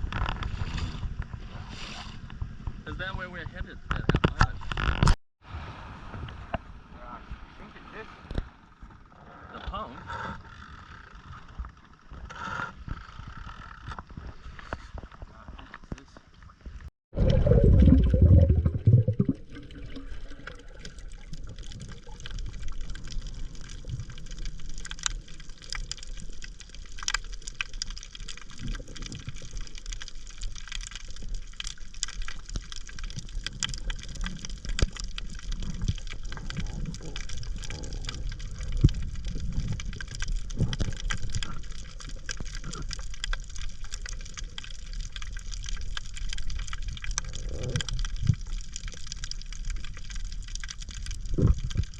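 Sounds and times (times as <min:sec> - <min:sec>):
water churning and bubbling: 0:16.5 - 0:51.9.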